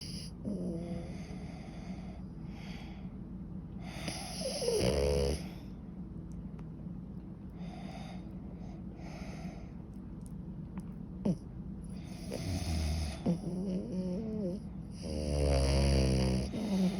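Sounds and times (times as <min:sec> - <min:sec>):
dog snoring loudly: 0:00.0 - 0:01.3, 0:03.9 - 0:05.6, 0:12.0 - 0:16.9.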